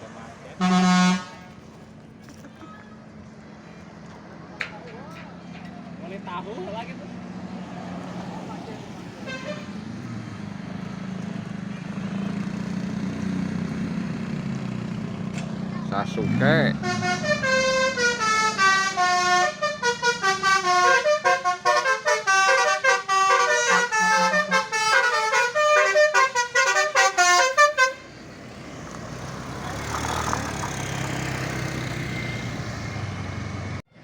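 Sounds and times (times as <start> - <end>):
bus engine and road noise: 0.0 - 34.0
bus musical horn tune: 0.6 - 1.6, 9.3 - 9.8, 16.8 - 28.2.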